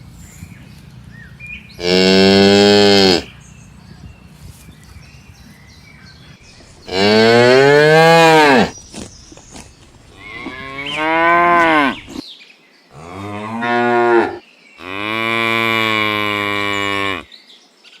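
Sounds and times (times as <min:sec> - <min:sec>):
cow mooing: 0:01.8 - 0:03.3, 0:06.9 - 0:08.7, 0:10.2 - 0:12.2, 0:13.0 - 0:17.3.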